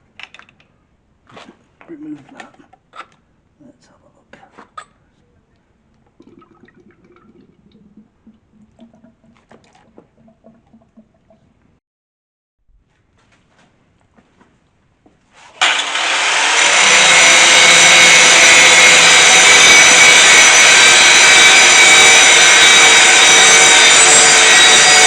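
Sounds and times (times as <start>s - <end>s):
electric grinder grinding steel: 15.5s - 25.0s.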